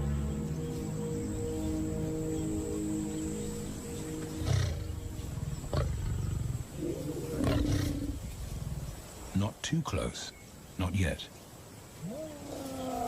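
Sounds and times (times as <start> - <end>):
soft background music: 0.0 - 8.2
lion roaring grunts: 5.7 - 8.8.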